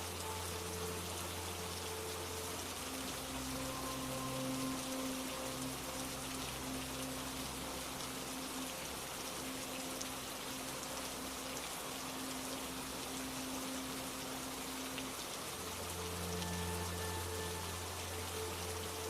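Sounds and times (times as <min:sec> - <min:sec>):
soft music of long held notes: 0:00.0 - 0:19.0
steady rain falling: 0:00.0 - 0:19.0.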